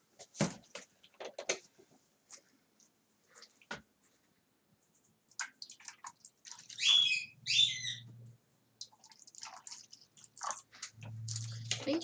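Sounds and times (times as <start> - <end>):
bird squawking: 6.7 - 8.1
bird chirping: 6.7 - 8.2.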